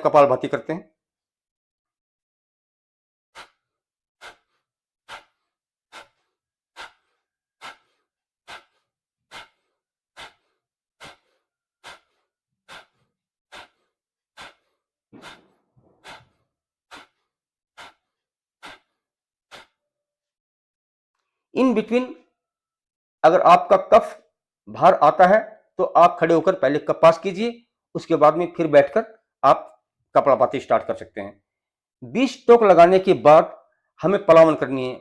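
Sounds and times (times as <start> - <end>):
forceful exhalations through the nose: 3.4 - 19.8.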